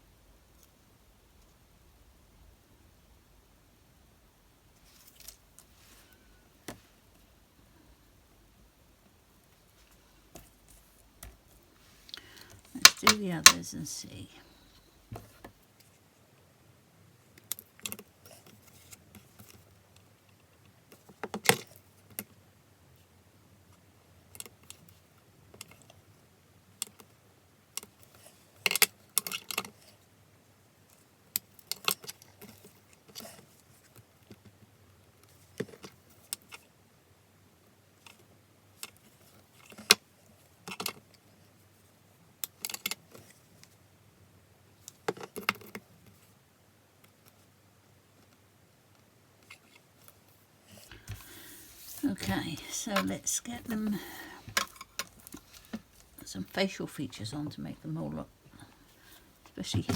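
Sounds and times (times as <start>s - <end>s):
hands handling paper card: 12.2s - 13.9s, 50.8s - 56.3s.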